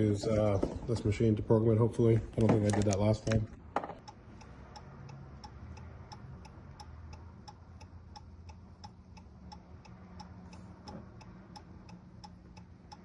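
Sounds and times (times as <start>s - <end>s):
steady ticking: 4.0s - 13.0s.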